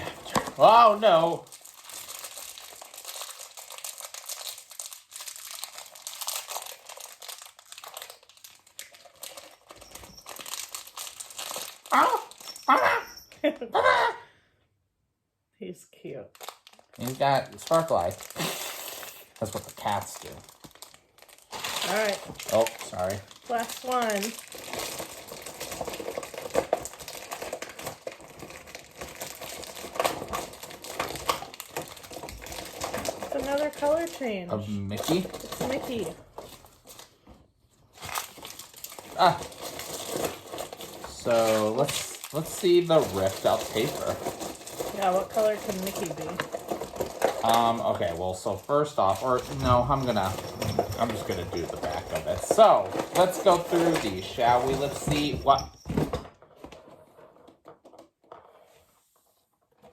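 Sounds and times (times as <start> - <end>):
paper packaging crinkling and tearing: 0.0 - 12.6, 16.3 - 37.2, 37.8 - 55.5.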